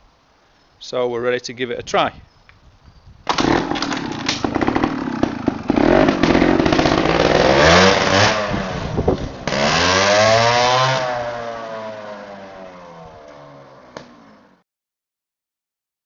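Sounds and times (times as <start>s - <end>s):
motorcycle engine revving: 3.4s - 14.6s.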